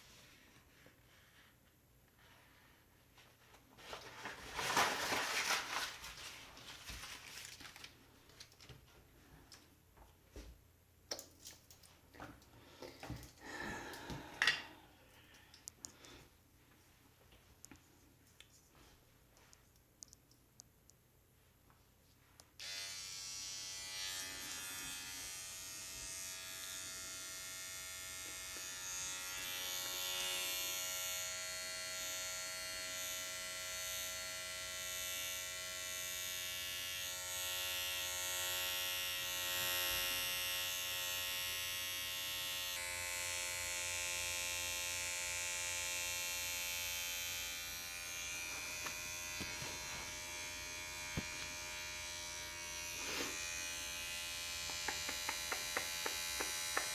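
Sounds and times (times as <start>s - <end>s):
tattoo machine buzzing: 22.6s - 56.9s.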